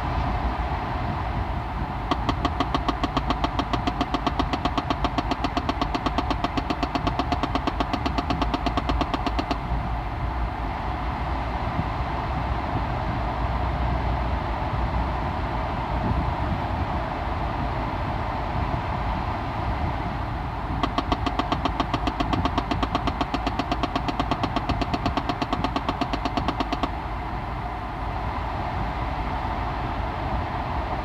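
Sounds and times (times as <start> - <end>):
car running noise: 0.0 - 10.6, 20.5 - 27.8
fast knocking behind dashboard: 0.4 - 9.8, 20.8 - 27.0.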